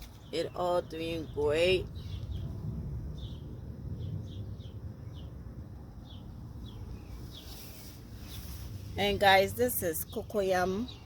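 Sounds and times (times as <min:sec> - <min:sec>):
bird chirping: 0:00.0 - 0:05.4, 0:06.0 - 0:11.0
low rumble: 0:01.3 - 0:09.7.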